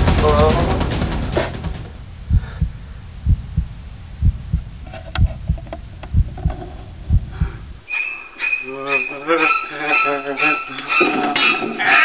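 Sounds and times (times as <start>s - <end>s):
heartbeat-like double thumps: 0.0s - 7.7s.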